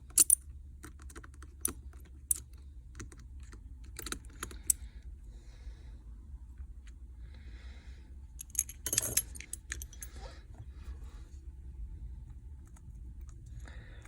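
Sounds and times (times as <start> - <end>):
low steady hum: 0.0 - 14.0
metal tools clinking: 8.4 - 10.2.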